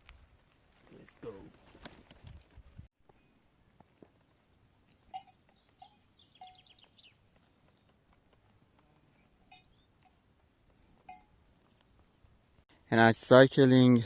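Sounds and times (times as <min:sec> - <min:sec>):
faint birds chirping: 0:03.3 - 0:12.7.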